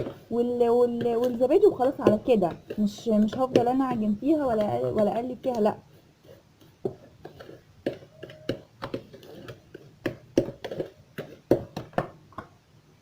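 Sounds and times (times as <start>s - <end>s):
spoon knocking mixing bowl: 0.0s - 5.8s.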